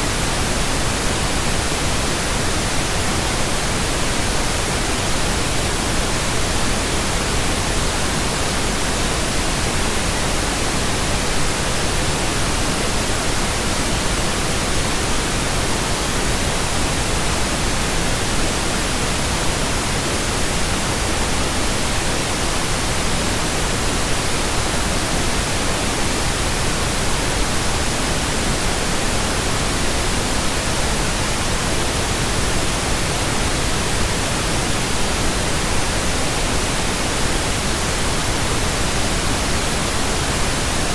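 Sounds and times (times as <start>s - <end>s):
pink noise hiss: 0.0s - 40.9s.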